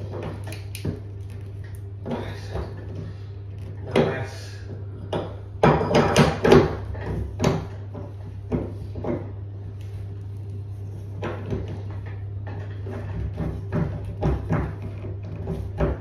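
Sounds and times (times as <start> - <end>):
knocking and rubbing of tap: 11.1 - 16.0.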